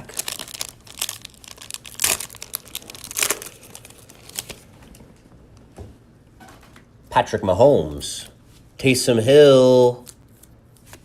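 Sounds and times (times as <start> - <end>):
wrapper tearing and crinkling: 0.0 - 4.7.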